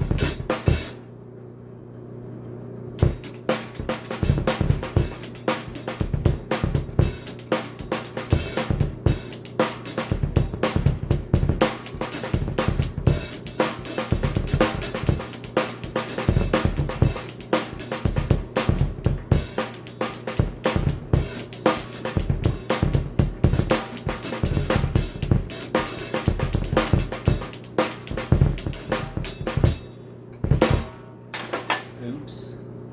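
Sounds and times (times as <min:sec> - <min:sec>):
drum kit played fast: 0:00.0 - 0:01.0, 0:03.0 - 0:31.8.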